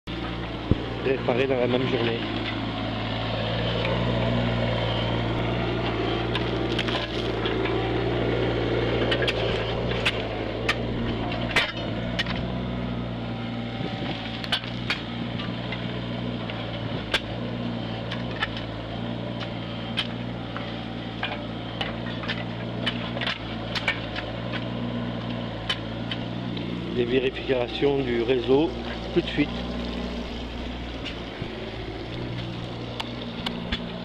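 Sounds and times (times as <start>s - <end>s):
engine running at low pitch: 0.0s - 34.0s
sharp clicks and knocks: 8.9s - 12.5s, 13.8s - 18.7s, 19.3s - 26.7s, 30.9s - 34.0s.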